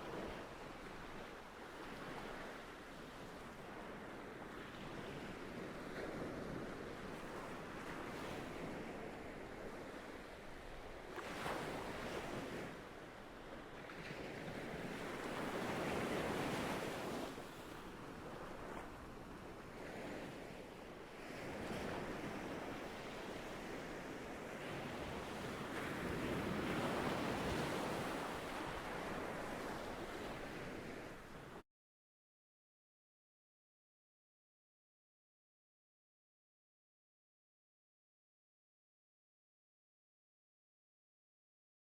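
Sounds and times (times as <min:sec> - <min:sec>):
ocean waves washing ashore: 0:00.0 - 0:31.6.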